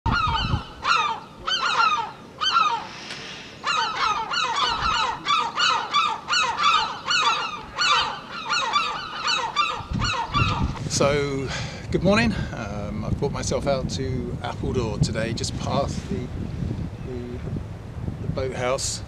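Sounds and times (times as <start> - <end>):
geese honking: 0.1 - 3.0, 3.6 - 10.8.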